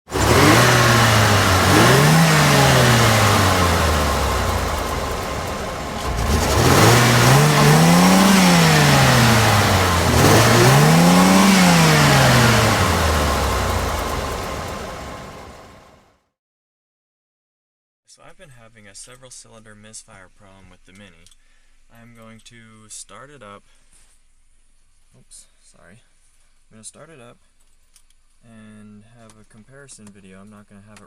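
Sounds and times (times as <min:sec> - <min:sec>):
car engine revving: 0:00.0 - 0:16.0.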